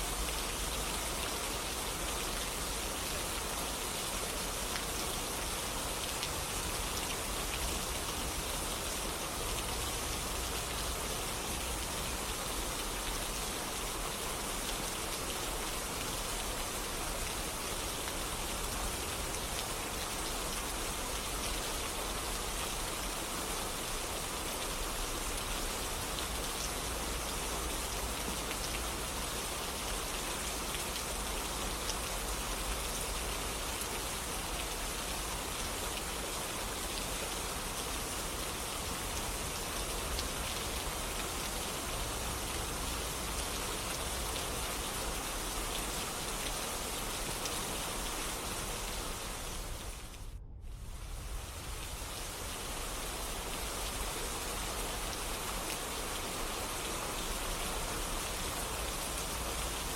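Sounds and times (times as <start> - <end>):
steady rainfall: 0.0 - 59.9.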